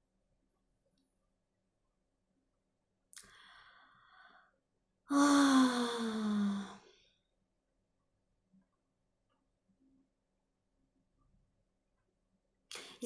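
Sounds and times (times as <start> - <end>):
woman sighing: 5.1 - 6.8.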